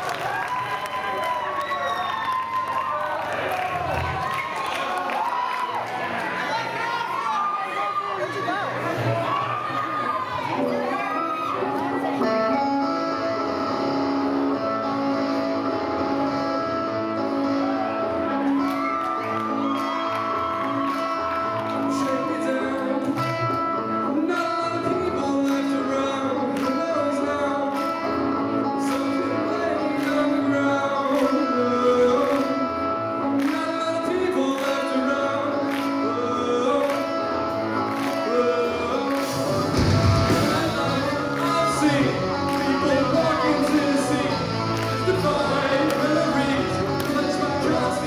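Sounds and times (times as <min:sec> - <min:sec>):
live band playing: 0:10.4 - 0:48.0
drum beat: 0:39.3 - 0:41.8.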